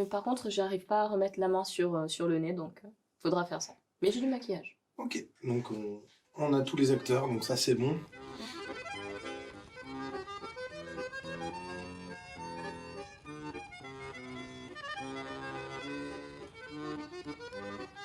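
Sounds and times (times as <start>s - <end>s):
bouncy instrumental music: 5.0s - 18.0s.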